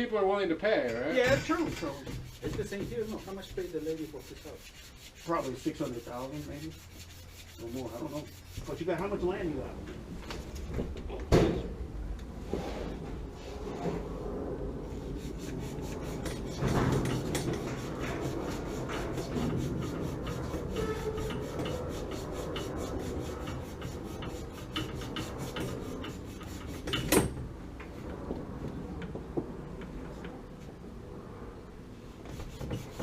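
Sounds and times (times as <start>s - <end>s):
hand tool rasping strokes: 1.2s - 8.8s, 15.2s - 27.1s.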